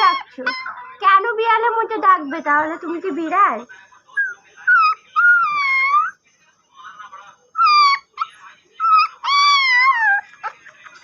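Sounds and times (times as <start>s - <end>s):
puppy whining: 0.0s - 1.0s, 4.1s - 6.2s, 7.5s - 10.7s.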